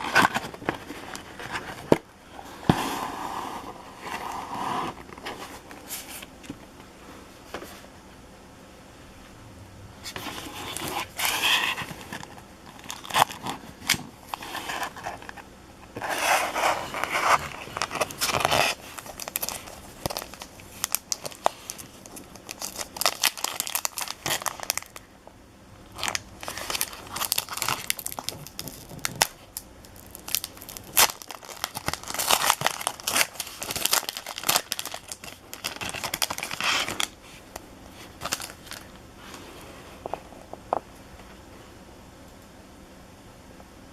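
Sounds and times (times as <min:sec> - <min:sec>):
plastic wrappers tearing and crinkling: 0:10.2 - 0:15.3, 0:16.0 - 0:25.0, 0:25.9 - 0:38.9.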